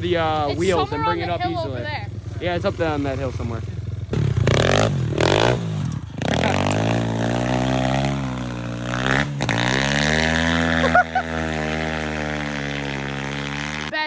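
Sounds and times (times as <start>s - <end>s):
dirt bike engine revving: 0.0s - 14.0s.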